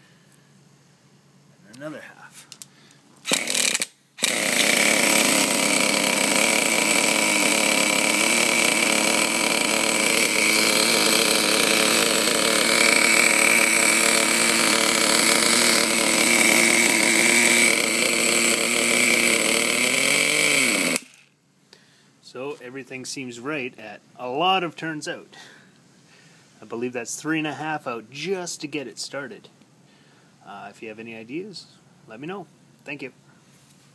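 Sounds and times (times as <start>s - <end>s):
model engine whining on starter: 3.2s - 21.3s.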